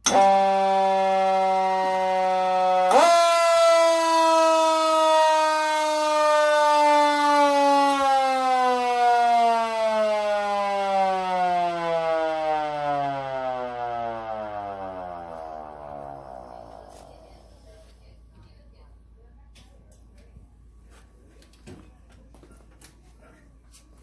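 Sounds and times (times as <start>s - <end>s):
fire engine siren winding: 0.0s - 17.3s.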